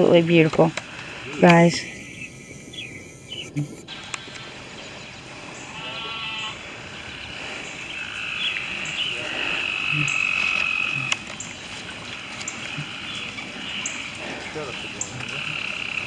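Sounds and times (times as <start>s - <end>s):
frogs calling: 0.0s - 16.0s
rapid pulsing call: 0.8s - 4.6s, 5.7s - 11.5s, 12.2s - 16.0s
high insect trill: 1.0s - 4.2s.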